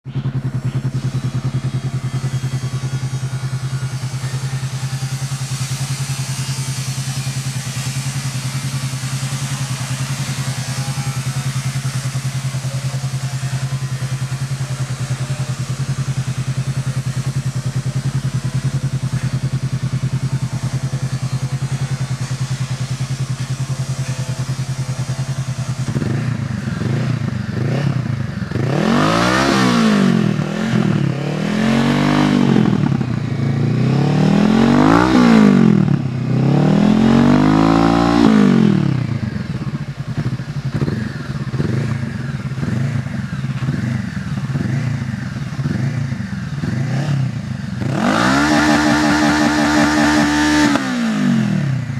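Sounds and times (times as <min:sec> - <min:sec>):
motorcycle engine idling and revving: 0:00.0 - 0:51.9.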